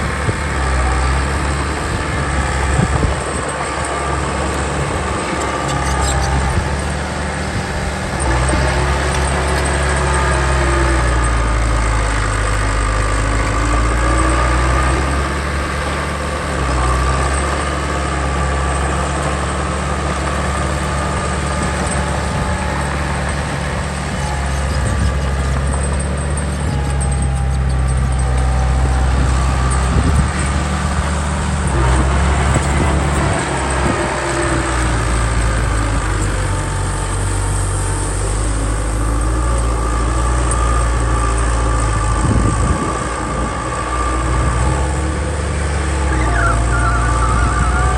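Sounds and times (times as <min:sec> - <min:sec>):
heavy diesel engine running: 0:00.0 - 0:47.9
high whining tones: 0:38.9 - 0:47.9.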